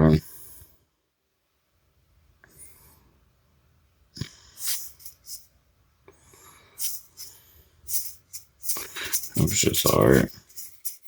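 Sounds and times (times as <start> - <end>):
cards sliding and brushing: 4.6 - 5.4.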